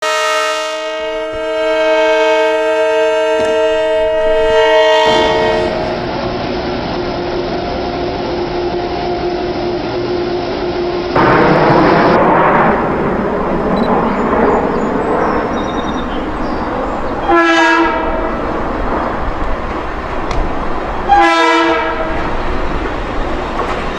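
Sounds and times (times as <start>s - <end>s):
train horn chord: 0.0s - 6.1s, 16.0s - 18.5s, 20.2s - 22.3s
train running past on tracks: 0.0s - 23.9s.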